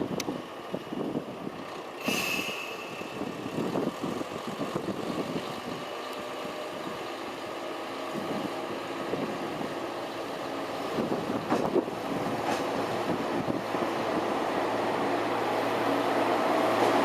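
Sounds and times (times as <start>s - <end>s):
air hiss: 2.0s - 3.3s.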